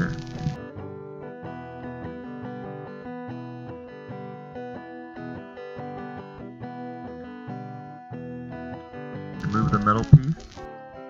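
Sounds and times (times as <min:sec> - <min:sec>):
plucked guitar music: 0:00.0 - 0:11.0.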